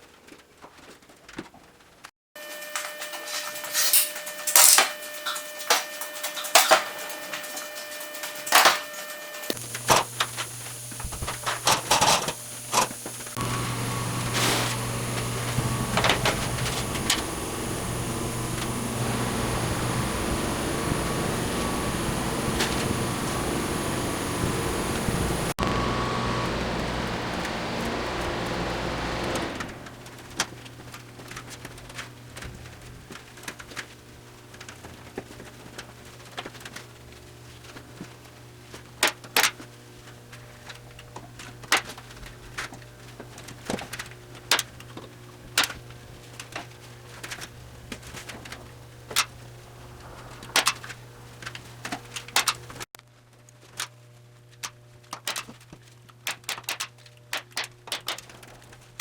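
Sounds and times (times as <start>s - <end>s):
low electrical hum: 2.6s - 59.0s.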